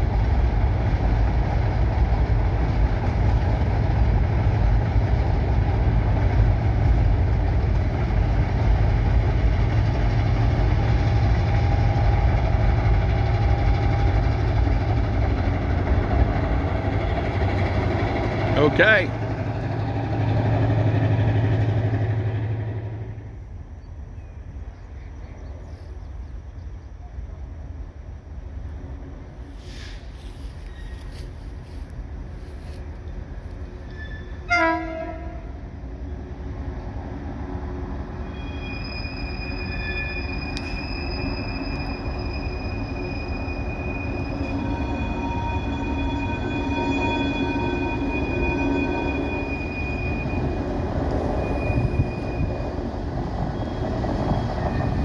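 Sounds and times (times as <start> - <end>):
train low rumble: 0.0 - 55.0
train wheels squealing on rail: 4.3 - 23.2, 29.3 - 35.5, 37.8 - 55.0.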